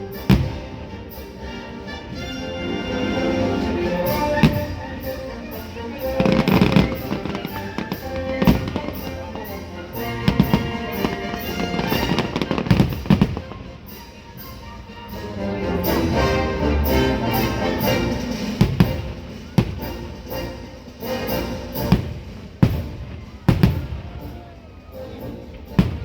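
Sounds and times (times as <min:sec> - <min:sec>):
orchestral music: 0:00.0 - 0:26.0
fireworks bangs and crackles: 0:00.1 - 0:00.9, 0:04.1 - 0:05.1, 0:06.1 - 0:14.2, 0:17.5 - 0:24.9, 0:25.6 - 0:26.0.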